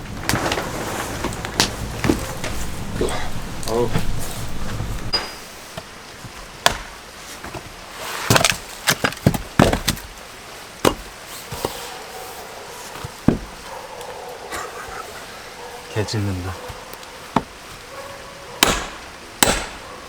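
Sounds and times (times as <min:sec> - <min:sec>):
axe splitting firewood: 0:00.0 - 0:05.9, 0:06.6 - 0:10.1, 0:10.8 - 0:11.8, 0:18.6 - 0:19.8.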